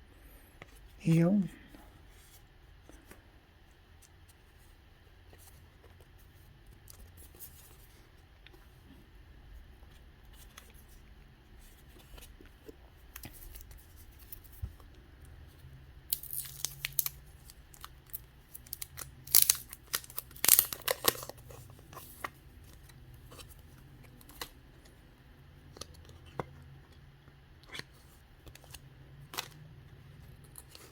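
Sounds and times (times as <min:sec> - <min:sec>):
plastic wrapper tearing and crinkling: 0:16.1 - 0:22.3.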